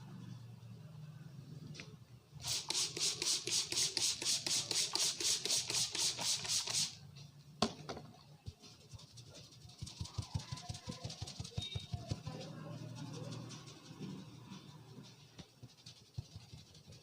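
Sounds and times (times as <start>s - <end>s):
hands rubbing hair and scalp: 2.4s - 6.9s, 8.8s - 17.0s.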